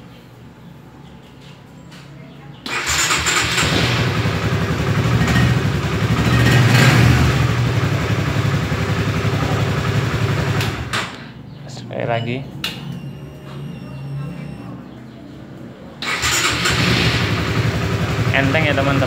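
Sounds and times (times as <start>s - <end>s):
motorcycle engine running: 3.2s - 10.9s, 16.5s - 19.0s.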